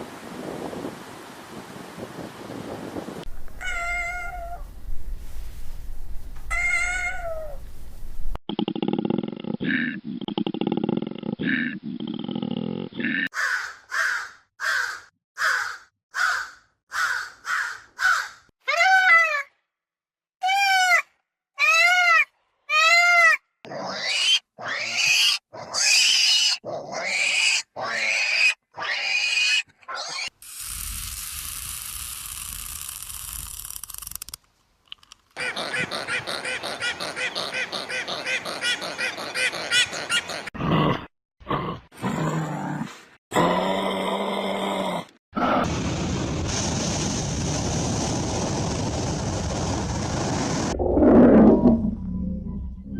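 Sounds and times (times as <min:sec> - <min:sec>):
farm animal calls: 0:35.4 - 0:40.5.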